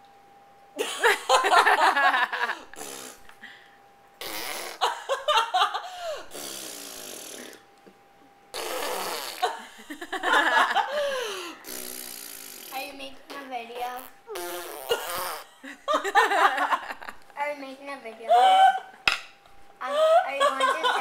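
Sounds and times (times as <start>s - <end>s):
baby blowing raspberries: 2.7s - 3.3s, 4.2s - 4.9s, 6.2s - 7.6s, 8.5s - 9.5s, 11.2s - 12.8s, 14.3s - 15.5s.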